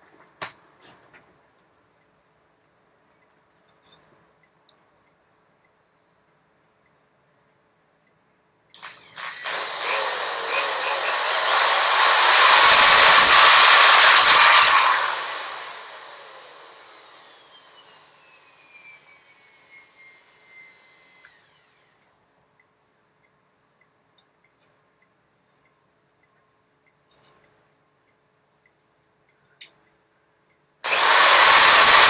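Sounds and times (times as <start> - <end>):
electric drill drilling metal: 8.8 - 22.0, 30.8 - 32.0.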